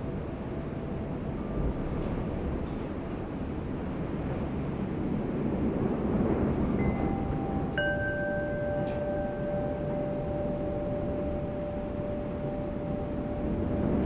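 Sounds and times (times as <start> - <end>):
low rumble of wind: 0.0 - 14.0
wind chime ringing: 6.8 - 14.0.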